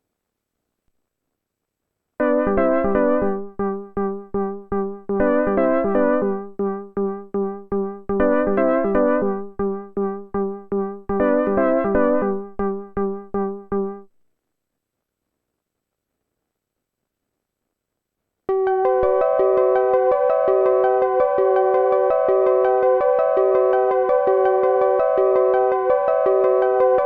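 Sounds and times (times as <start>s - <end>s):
synthesizer pattern over held low note: 2.2s - 14.0s.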